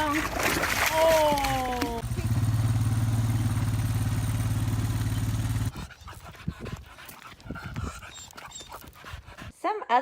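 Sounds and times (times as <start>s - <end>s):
engine-like drone: 1.3s - 5.9s
dog panting and snuffling: 5.7s - 9.6s.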